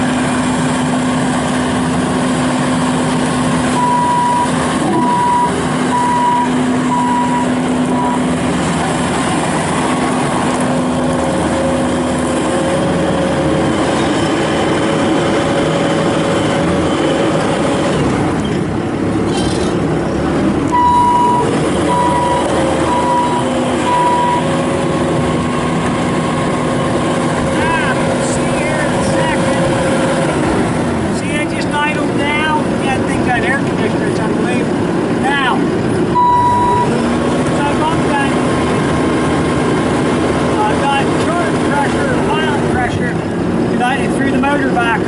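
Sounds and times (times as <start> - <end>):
diesel engine running: 0.0 - 45.0
alarm beeping: 3.8 - 8.3, 20.7 - 24.5, 36.2 - 37.0.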